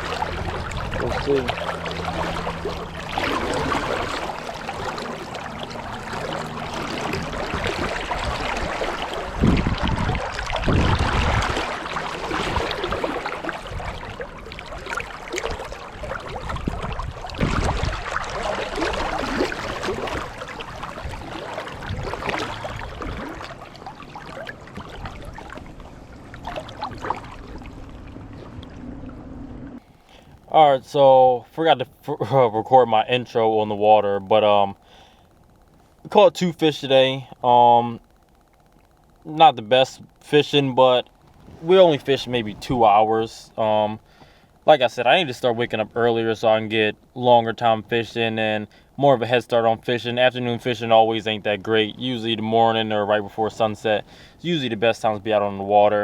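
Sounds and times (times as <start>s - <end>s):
stream rushing: 0.0s - 29.6s
low rumbles: 0.0s - 30.6s.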